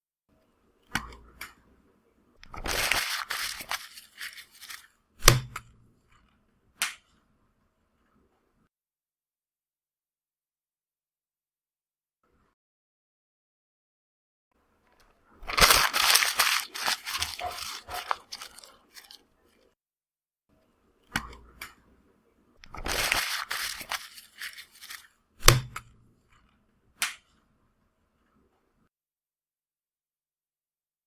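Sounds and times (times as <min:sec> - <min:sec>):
paper crumpling: 0:02.6 - 0:04.9, 0:15.4 - 0:19.2, 0:22.8 - 0:25.1.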